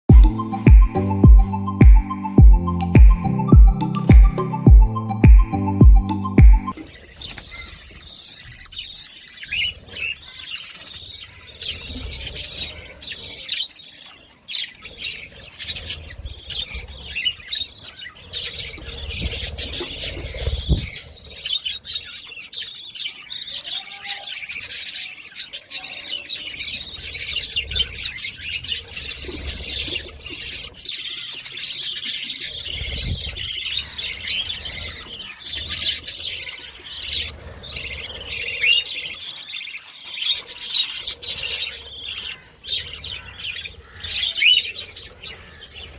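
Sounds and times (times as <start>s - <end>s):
low thumps: 0.1s - 6.7s
budgerigars chirping: 6.8s - 45.9s.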